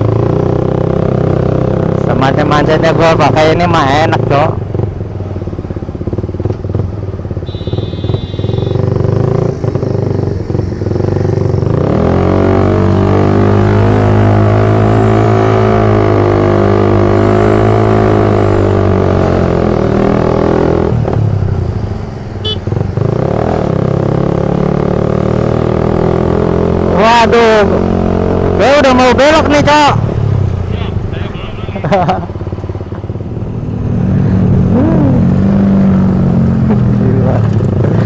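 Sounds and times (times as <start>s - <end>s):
motorcycle engine accelerating: 0.0s - 30.7s, 31.8s - 38.0s.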